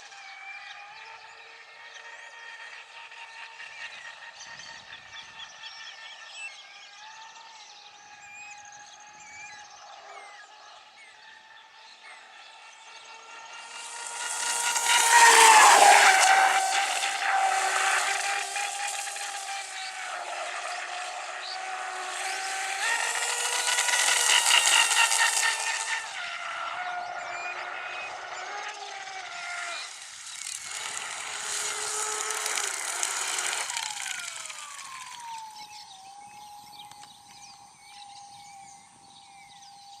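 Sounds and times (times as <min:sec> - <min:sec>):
electric motor whining: 0:11.5 - 0:40.0.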